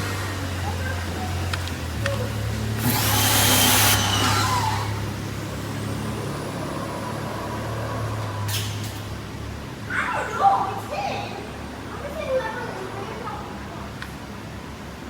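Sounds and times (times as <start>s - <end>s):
pressure washer engine running: 2.6s - 5.4s
high-pressure water spray hissing: 2.7s - 5.2s.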